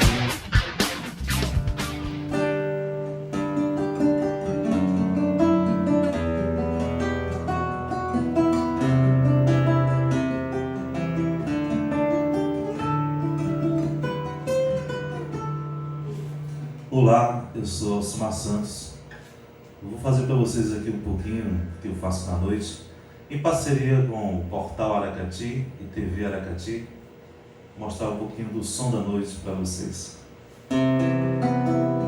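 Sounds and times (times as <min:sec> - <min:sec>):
acoustic guitar playing: 0:00.0 - 0:19.4, 0:30.5 - 0:32.0.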